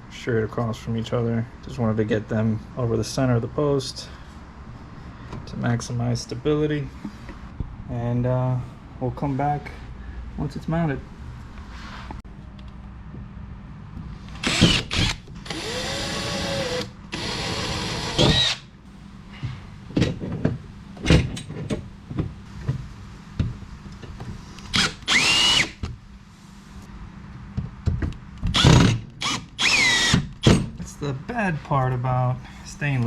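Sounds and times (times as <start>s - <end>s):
power drill motor whine: 14.4s - 18.6s, 24.7s - 25.8s, 28.5s - 30.3s.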